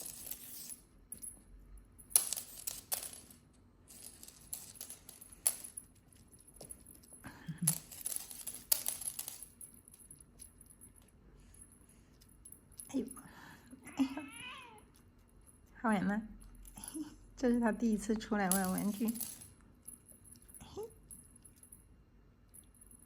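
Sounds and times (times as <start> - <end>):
cat toy rattling and jingling: 2.2 - 13.3.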